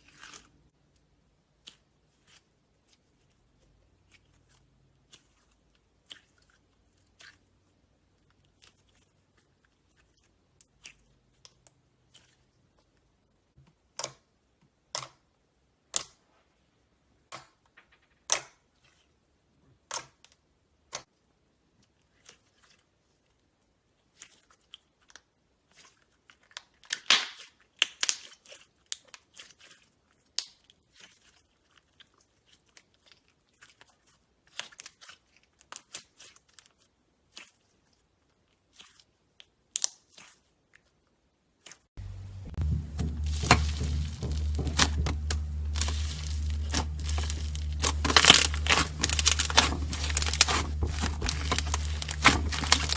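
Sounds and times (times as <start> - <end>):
music: 42.0 - 52.9.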